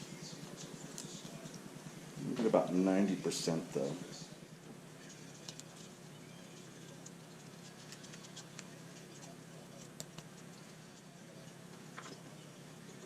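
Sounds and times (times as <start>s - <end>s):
steady low hum: 0.0s - 13.0s
hands clicking and scratching wood: 5.1s - 6.0s, 6.9s - 11.1s.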